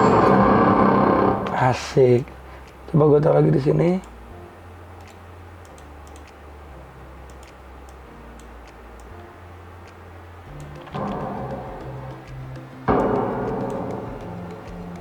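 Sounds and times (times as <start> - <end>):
low steady hum: 0.0 - 15.0
computer mouse clicks: 5.0 - 6.4, 7.3 - 9.2.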